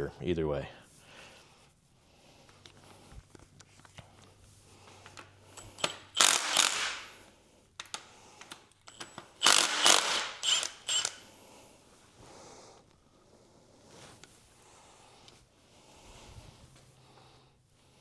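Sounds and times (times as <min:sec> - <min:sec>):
ratchet-like mechanical noise: 0:05.6 - 0:07.1, 0:08.9 - 0:11.2.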